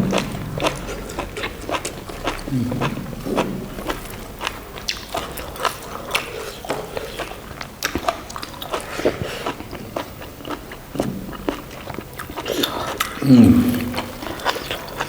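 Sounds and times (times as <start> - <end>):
people chewing and biting: 0.0 - 15.0.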